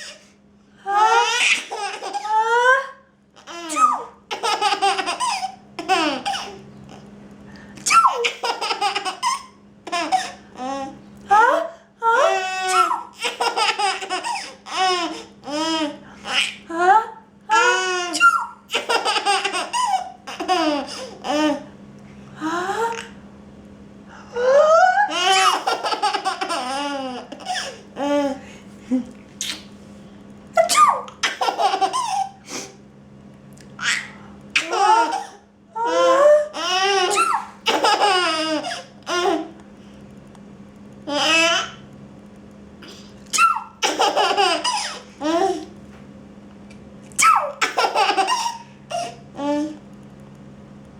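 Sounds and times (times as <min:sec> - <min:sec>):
baby laughing: 0:01.0 - 0:02.6, 0:03.4 - 0:07.0, 0:07.9 - 0:11.0, 0:12.2 - 0:16.6, 0:17.5 - 0:21.7, 0:24.8 - 0:28.4, 0:30.6 - 0:32.4, 0:33.8 - 0:39.5, 0:43.3 - 0:45.7, 0:47.2 - 0:49.7.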